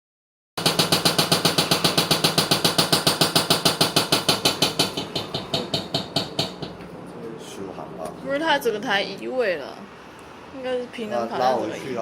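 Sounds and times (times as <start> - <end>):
washing machine banging: 0.6 - 6.8.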